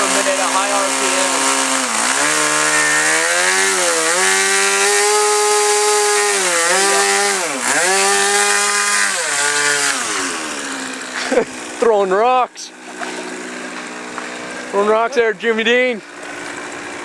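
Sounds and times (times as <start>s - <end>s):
model airplane engine at high revs: 0.0s - 17.0s.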